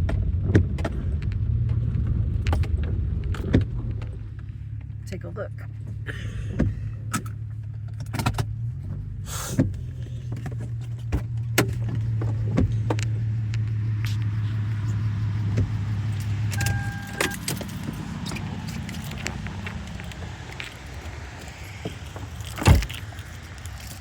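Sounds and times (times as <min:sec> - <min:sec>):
car engine idling: 0:00.0 - 0:24.0
short steady beep: 0:16.6 - 0:17.4.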